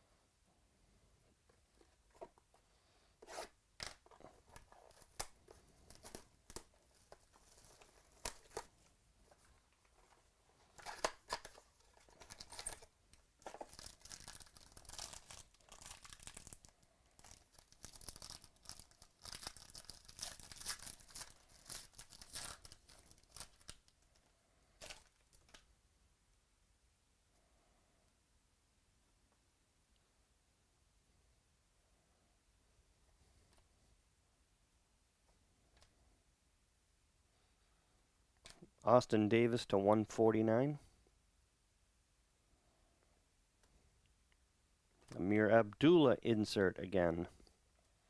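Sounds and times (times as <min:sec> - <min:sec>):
packaging clicks and snaps: 0:10.8 - 0:23.9
wrapper tearing and crinkling: 0:10.8 - 0:23.9.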